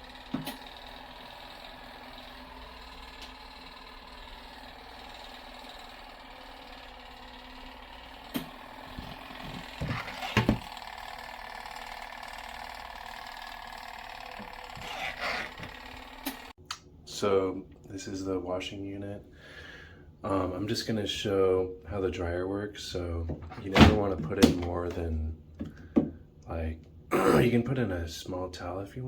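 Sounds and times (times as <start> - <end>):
washing machine motor hum: 0.0 - 16.6
knocks and thumps: 8.4 - 10.7.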